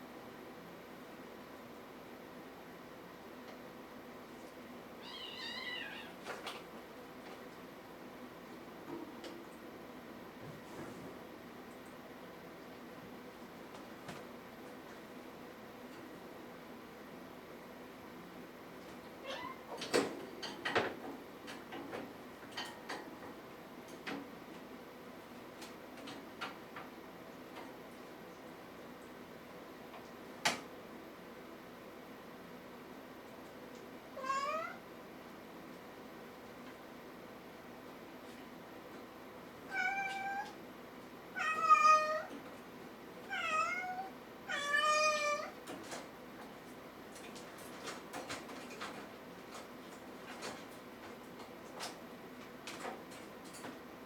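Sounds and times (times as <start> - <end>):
kitten meowing: 5.0 - 6.1.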